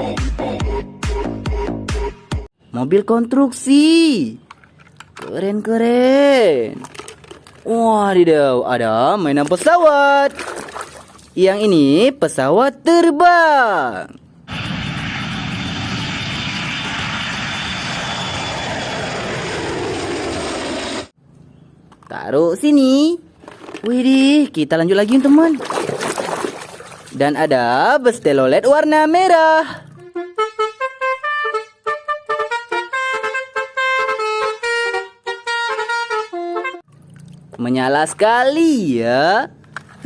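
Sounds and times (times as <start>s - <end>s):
airplane engine noise: 14.4s - 21.2s
bus horn melody: 30.0s - 36.9s.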